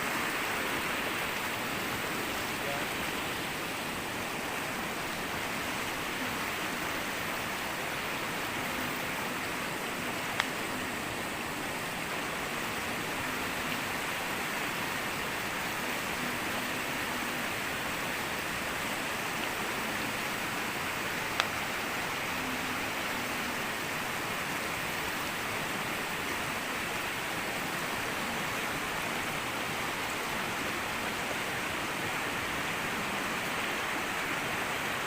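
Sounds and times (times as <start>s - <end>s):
steady rain falling: 0.0s - 35.0s.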